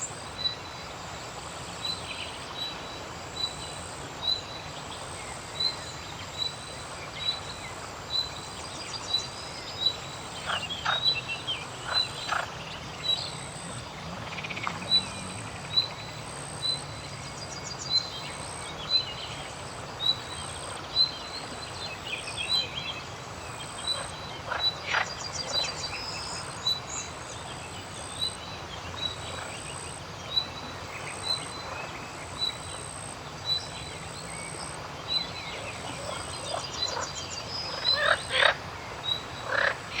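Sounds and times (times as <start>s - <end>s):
frogs calling: 0.0s - 21.3s, 23.3s - 27.2s, 28.1s - 40.0s
outdoor background noise: 0.0s - 40.0s.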